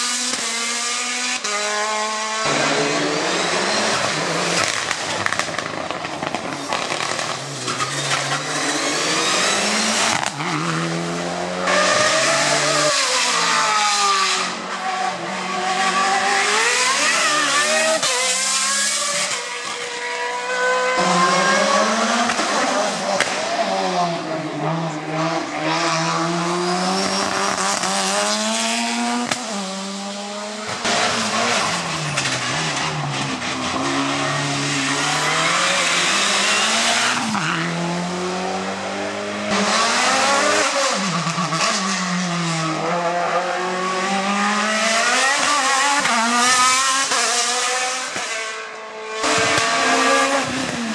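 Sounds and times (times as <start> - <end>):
race car engines revving past: 0.0 - 50.9.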